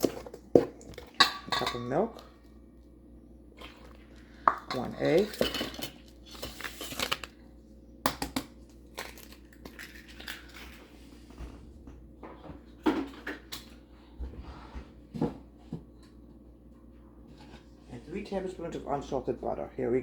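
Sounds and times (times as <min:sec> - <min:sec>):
egg cracking: 0:08.1 - 0:10.9.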